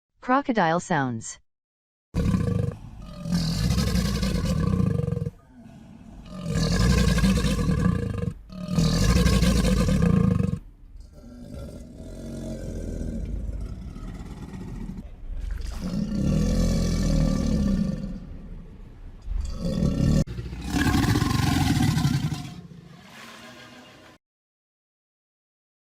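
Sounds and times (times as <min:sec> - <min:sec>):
low crocodile growl: 0:02.2 - 0:24.0
crocodile roars: 0:02.2 - 0:24.2.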